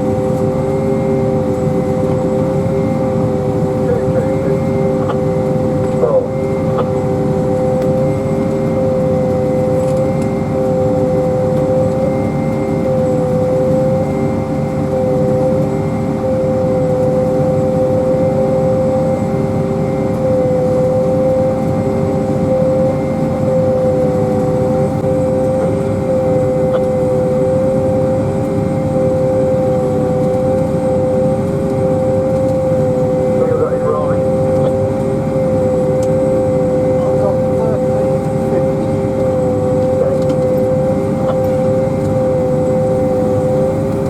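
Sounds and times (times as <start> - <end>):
machine drone with whine: 0.0 - 44.0.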